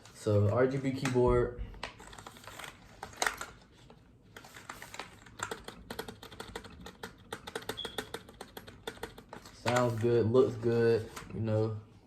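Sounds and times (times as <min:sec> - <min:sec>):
computer keyboard key clicks: 0:05.4 - 0:09.3.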